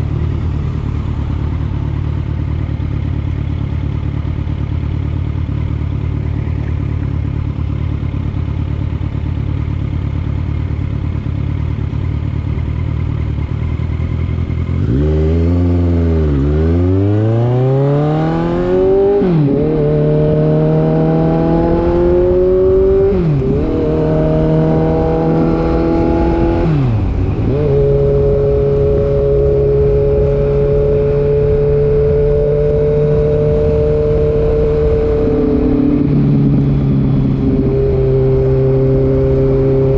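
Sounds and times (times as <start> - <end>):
motorbike engine revving through gears: 14.0 - 39.9.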